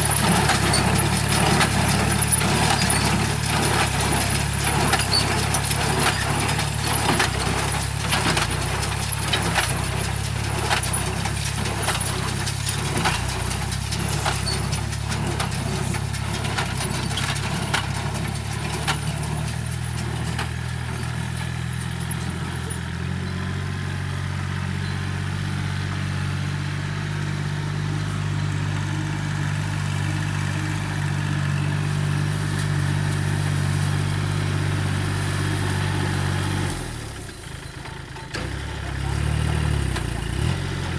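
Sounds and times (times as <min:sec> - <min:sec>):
tractor engine running: 0:00.0 - 0:40.9.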